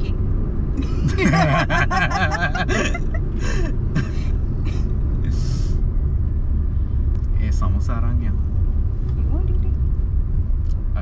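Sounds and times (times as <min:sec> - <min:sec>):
car cabin rumble: 0:00.0 - 0:05.4, 0:06.0 - 0:11.0
person laughing: 0:00.8 - 0:04.8.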